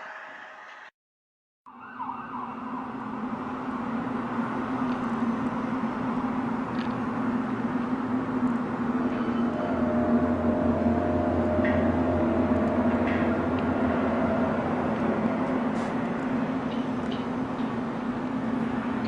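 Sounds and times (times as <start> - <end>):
steady low drone: 3.0 - 19.0
rushing noise: 7.6 - 19.0
wavering whine: 8.8 - 16.6.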